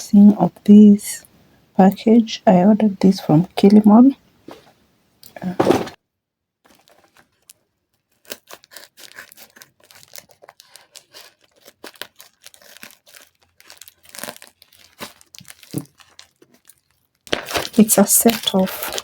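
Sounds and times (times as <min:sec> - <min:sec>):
package wrapping crinkling: 0:06.7 - 0:19.0.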